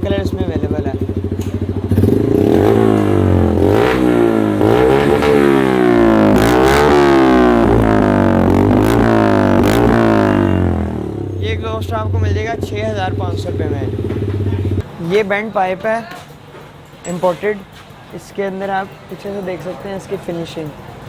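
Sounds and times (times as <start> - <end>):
motorcycle engine revving: 0.0 - 14.9.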